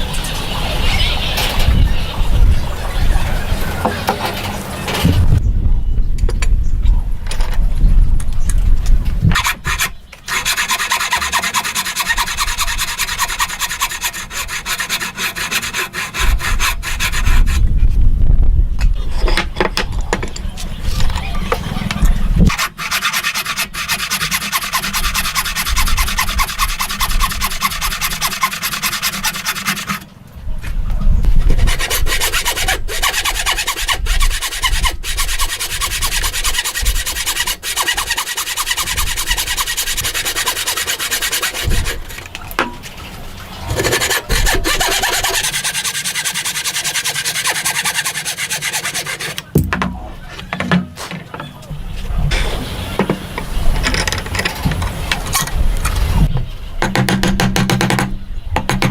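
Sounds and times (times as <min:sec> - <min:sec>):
hand tool rasping wood: 0:09.3 - 0:17.6, 0:22.5 - 0:30.0, 0:31.4 - 0:42.3, 0:43.7 - 0:51.5.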